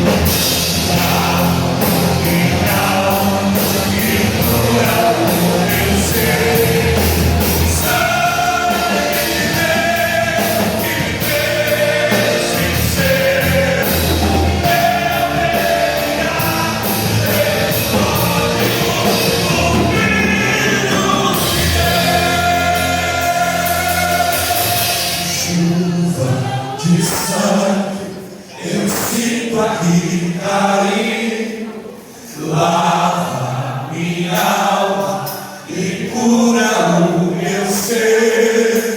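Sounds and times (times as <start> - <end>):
steady bass line: 0.0 - 25.5
drums with cymbals: 0.0 - 25.8, 34.2 - 36.2, 37.3 - 38.9
people singing: 0.0 - 38.9
worship band playing: 0.0 - 38.9.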